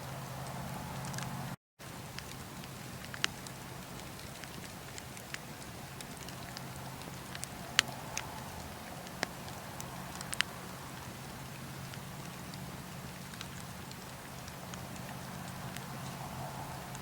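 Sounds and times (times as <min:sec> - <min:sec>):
wood fire crackling: 0:00.0 - 0:17.0.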